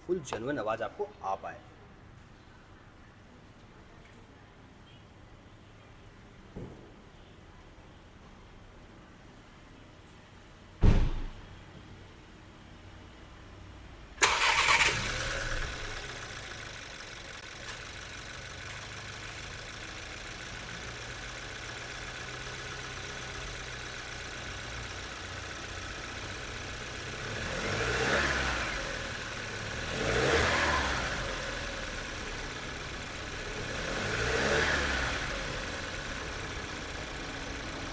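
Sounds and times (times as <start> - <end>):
car engine idling and revving: 14.2 - 37.9.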